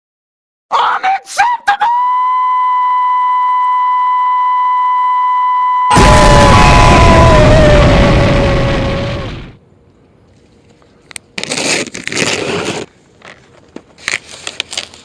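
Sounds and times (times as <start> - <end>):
chirping whistle sounds: 1.9 - 7.8
steady high whistle tone: 1.9 - 8.5
loud explosion-like blast: 5.9 - 9.6.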